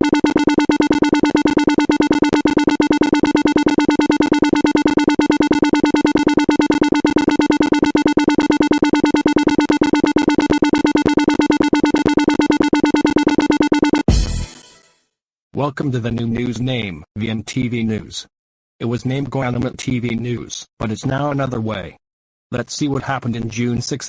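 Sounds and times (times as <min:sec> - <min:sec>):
harsh pulsing synthesizer tone: 0:00.0 - 0:14.6.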